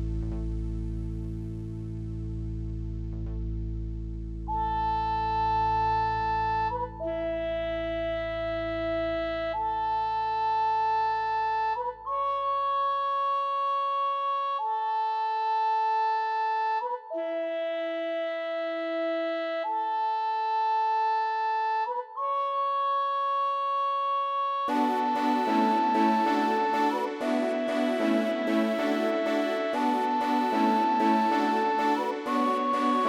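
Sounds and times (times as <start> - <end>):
reedy synthesized chords: 0.0 - 12.6, 24.7 - 33.0
low bass note: 0.0 - 12.8.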